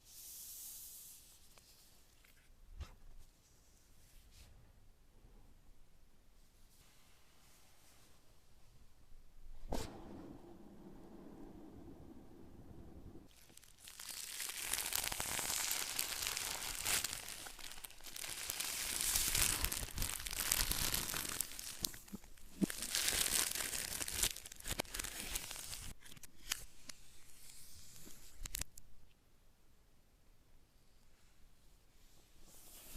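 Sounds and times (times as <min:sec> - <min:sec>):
packaging tearing and crinkling: 0:13.3 - 0:26.6, 0:28.2 - 0:28.7.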